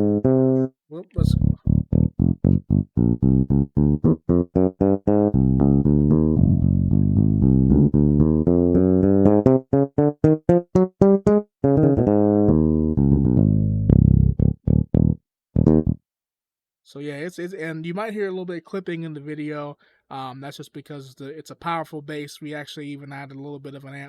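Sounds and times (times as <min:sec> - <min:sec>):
electric bass line: 0:00.0 - 0:16.0.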